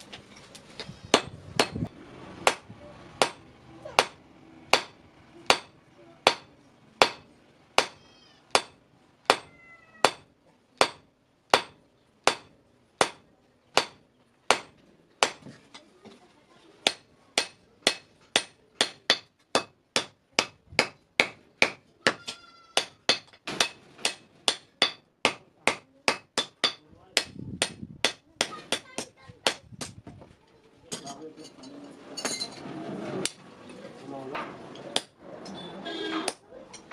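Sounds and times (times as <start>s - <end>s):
hammer striking steel on anvil: 1.1s - 15.5s, 16.8s - 29.9s.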